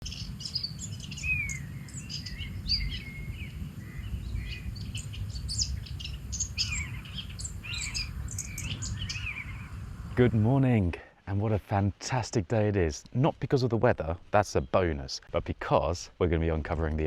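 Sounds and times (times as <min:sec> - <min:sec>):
birds singing and chirping: 0:00.0 - 0:10.6
steady low rumble: 0:00.0 - 0:11.0.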